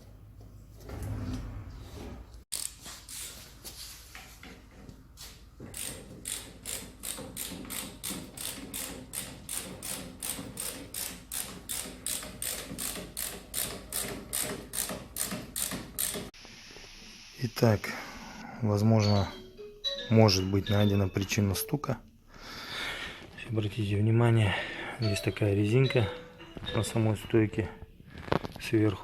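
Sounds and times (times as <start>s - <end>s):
ratchet wrench clicking: 2.5s - 2.8s, 5.7s - 16.3s.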